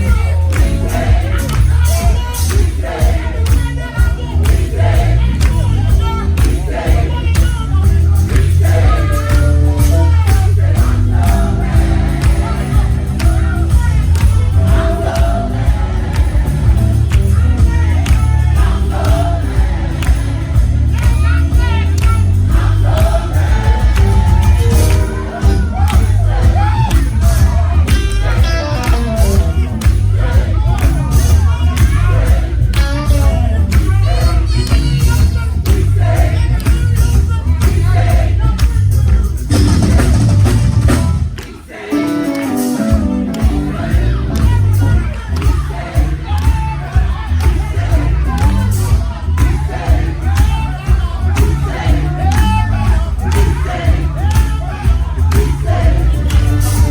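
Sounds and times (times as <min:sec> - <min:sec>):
drum hits: 0:00.0 - 0:41.8
band with heavy bass: 0:00.0 - 0:56.9
voices singing together: 0:00.0 - 0:56.9.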